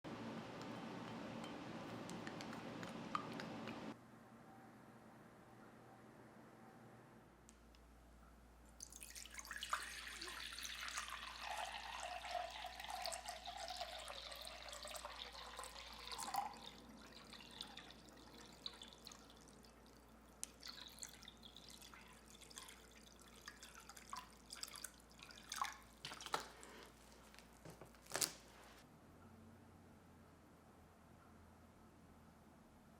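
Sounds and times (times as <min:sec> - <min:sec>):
water running into a container: 0:08.8 - 0:27.4.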